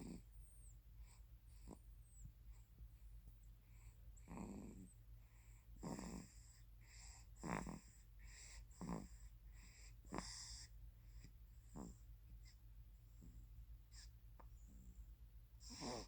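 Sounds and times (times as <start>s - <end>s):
baby snoring faintly: 0.0s - 2.8s, 3.6s - 16.0s.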